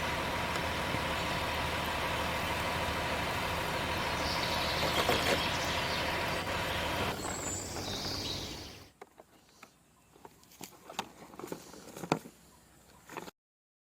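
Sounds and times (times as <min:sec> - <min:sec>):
truck engine running: 0:00.0 - 0:08.9.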